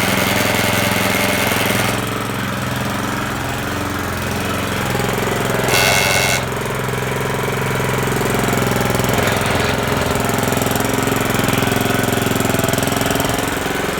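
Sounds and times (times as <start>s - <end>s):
reel mower running: 0.0s - 13.9s
high-pitched squeal: 5.7s - 6.5s.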